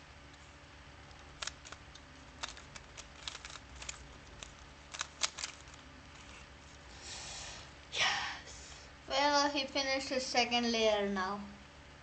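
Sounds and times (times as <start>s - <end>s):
puzzle cube clicking: 1.1s - 6.4s.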